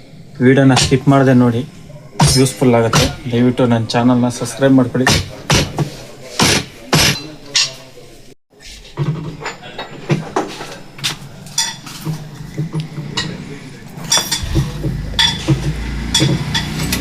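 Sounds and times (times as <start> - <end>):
metal parts and tools clinking: 14.0 - 17.0.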